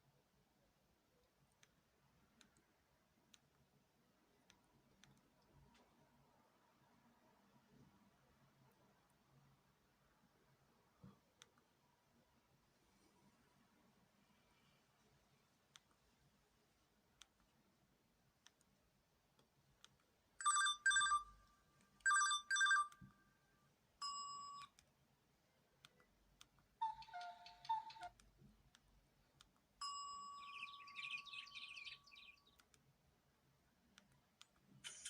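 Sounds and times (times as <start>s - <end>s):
mobile phone ringtones: 20.4s - 21.4s, 22.0s - 23.1s.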